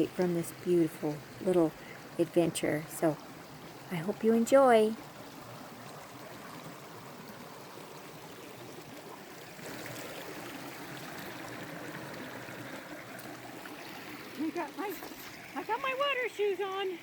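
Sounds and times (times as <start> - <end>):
creek water running over rocks: 0.0 - 17.0.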